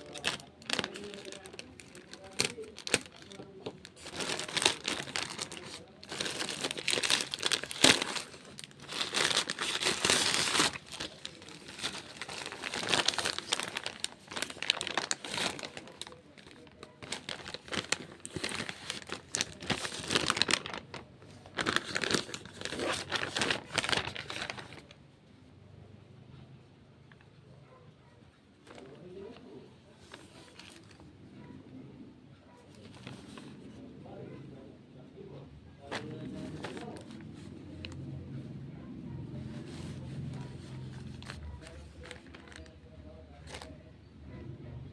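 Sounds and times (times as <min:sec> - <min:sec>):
plastic packaging crinkling and tearing: 0:00.0 - 0:25.0, 0:28.7 - 0:31.1, 0:35.8 - 0:38.4, 0:39.3 - 0:43.8.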